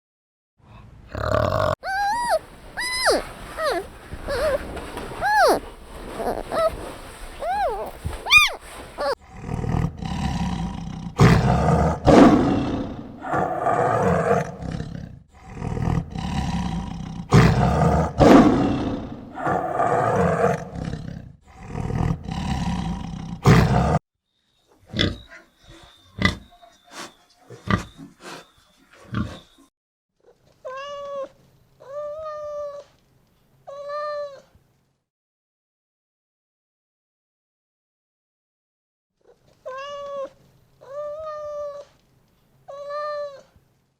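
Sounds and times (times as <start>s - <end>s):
animal harsh calls: 1.2s - 9.2s
short high-pitched animal calls: 1.8s - 9.2s.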